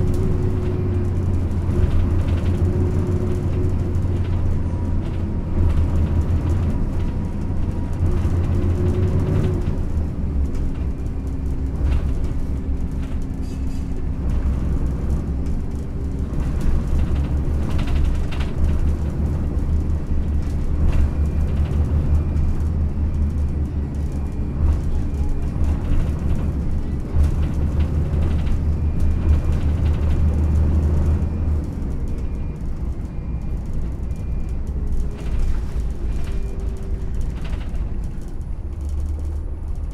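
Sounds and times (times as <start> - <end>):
bus engine droning: 0.0 - 39.9
body knocks and rattles: 10.4 - 31.4.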